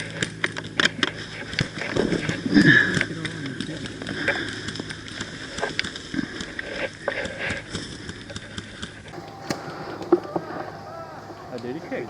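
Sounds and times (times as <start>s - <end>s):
faint distant voices: 9.2s - 12.0s.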